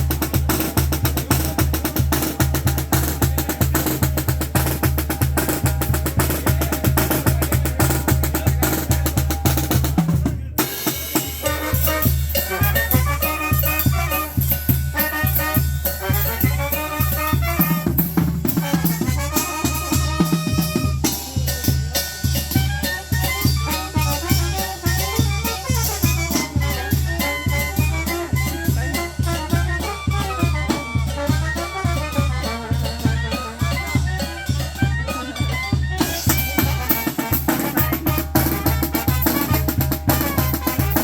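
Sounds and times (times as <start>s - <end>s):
bass drum beat: 0.0s - 41.0s
snare drum: 0.0s - 41.0s
wind instruments playing melody: 0.0s - 41.0s.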